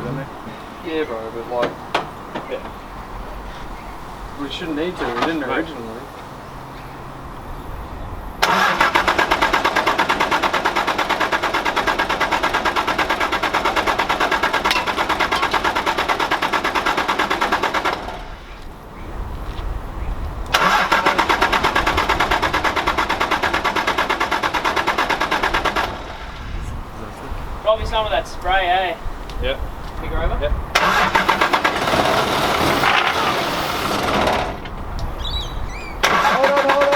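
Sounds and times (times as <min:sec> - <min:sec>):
diesel engine cranking on starter: 0:08.4 - 0:18.8, 0:20.4 - 0:26.6, 0:30.7 - 0:36.9.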